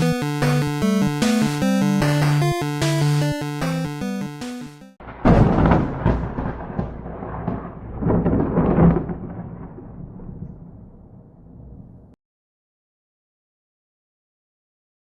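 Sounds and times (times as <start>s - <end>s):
thunder crack and rumble: 5.0s - 12.2s.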